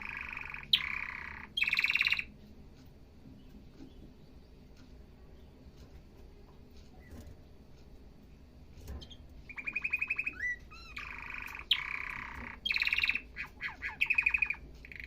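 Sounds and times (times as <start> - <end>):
canary singing: 0.0 - 2.6, 8.9 - 15.0.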